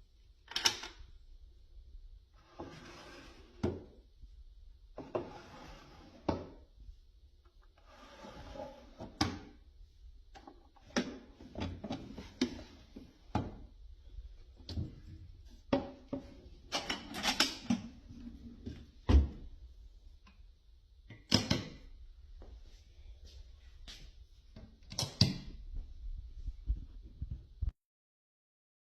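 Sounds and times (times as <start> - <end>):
wood scraping and sliding: 2.4 - 3.6, 5.0 - 6.3, 7.8 - 9.2.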